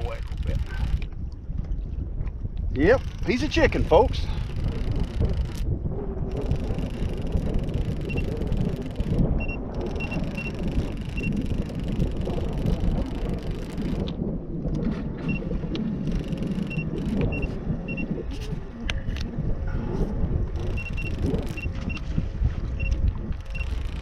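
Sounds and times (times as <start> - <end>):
wind buffeting microphone: 0.0 - 24.0
sharp clicks: 2.9 - 5.7, 15.7 - 17.5, 22.8 - 24.0
high double beeps: 20.7 - 22.0.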